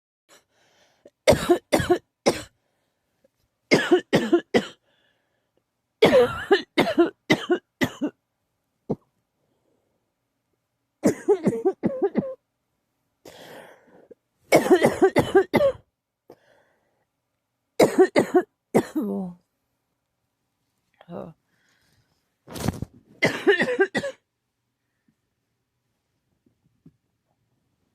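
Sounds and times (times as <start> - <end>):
person coughing harshly: 1.3 - 2.5, 3.7 - 4.8, 6.0 - 8.2, 11.0 - 12.4, 14.5 - 15.8, 17.8 - 19.1, 23.2 - 24.2.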